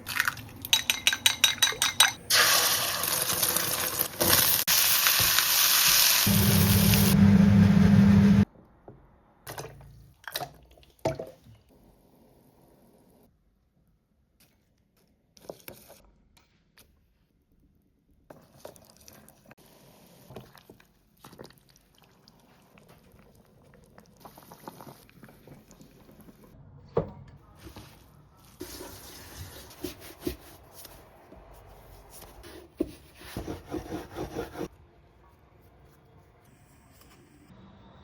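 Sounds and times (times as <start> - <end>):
kitchen knocks and clatter: 0.7 - 2.2.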